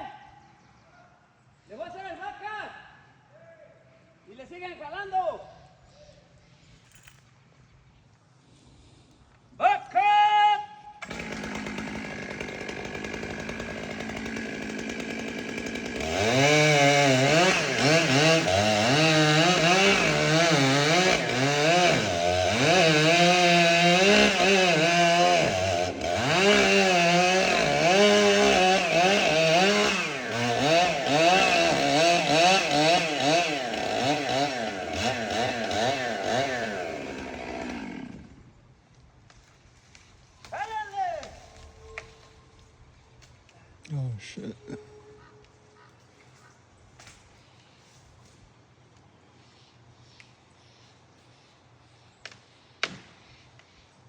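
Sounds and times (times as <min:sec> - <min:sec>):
chainsaw idling: 0:11.0 - 0:38.5
chainsaw cutting through wood: 0:11.0 - 0:38.6.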